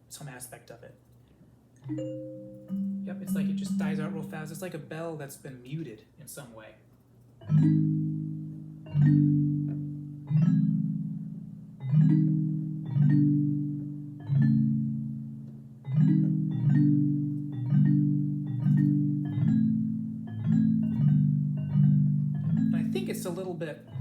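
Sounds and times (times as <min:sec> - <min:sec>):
piano bell tone chords: 0:01.9 - 0:04.5, 0:07.4 - 0:24.0.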